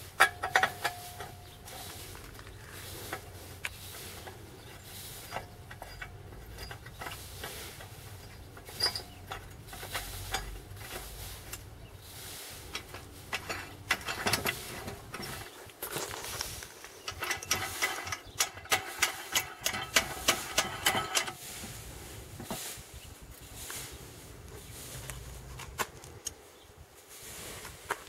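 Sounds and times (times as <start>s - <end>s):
light metal clicks and knocks: 0.0s - 11.7s, 12.7s - 15.8s, 17.0s - 21.4s.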